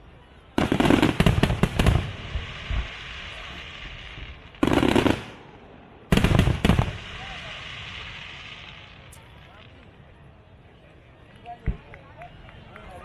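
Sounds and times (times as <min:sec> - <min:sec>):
fireworks bangs: 0:00.5 - 0:09.5.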